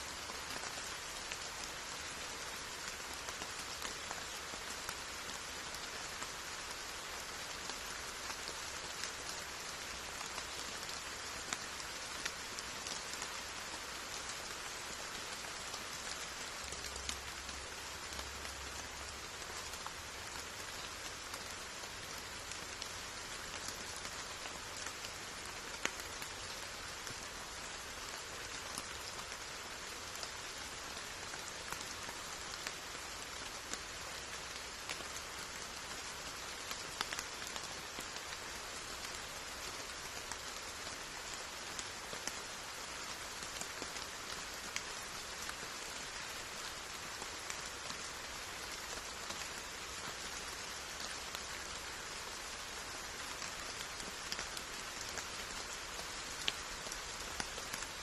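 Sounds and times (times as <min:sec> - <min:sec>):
steady rainfall: 0:00.0 - 0:58.0.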